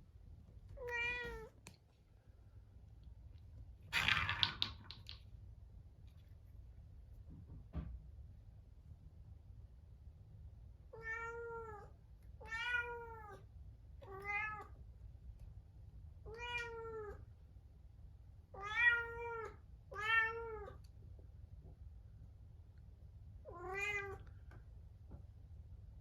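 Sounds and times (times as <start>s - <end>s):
cat meowing plaintively: 0.8s - 1.5s, 10.9s - 13.4s, 14.0s - 14.8s, 16.3s - 17.2s, 18.6s - 20.8s, 23.5s - 24.3s.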